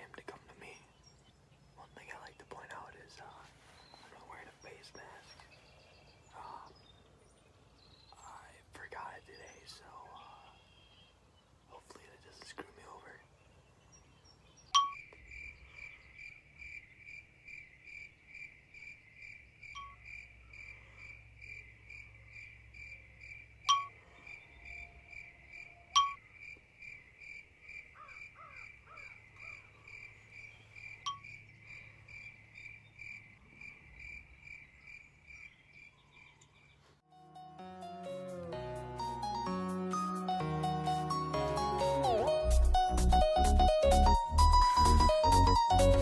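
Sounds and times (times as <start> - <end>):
faint bird warble: 0.0 - 17.0, 18.7 - 27.2, 27.8 - 37.0
high chirp: 14.6 - 15.3, 19.8 - 20.1, 23.6 - 26.2, 31.0 - 31.5.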